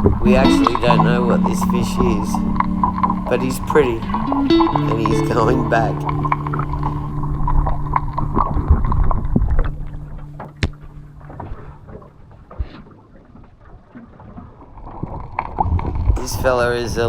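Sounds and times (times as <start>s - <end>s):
wind noise: 0.0s - 12.8s
water: 0.0s - 17.0s.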